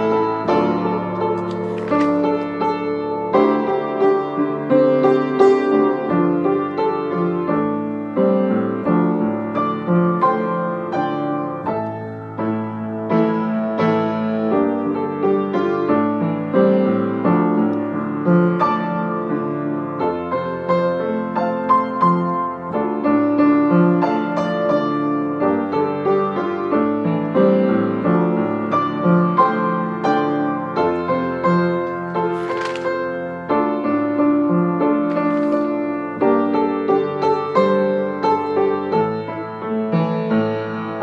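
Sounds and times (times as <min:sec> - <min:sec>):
piano playing chords and melody: 0:35.7 - 0:41.0.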